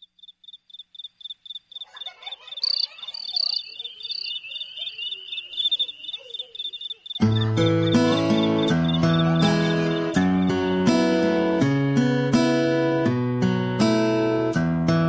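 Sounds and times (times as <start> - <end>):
cricket chirping: 0.0 - 10.8
fainter insect calls: 0.0 - 10.8
acoustic guitar music: 7.2 - 15.0.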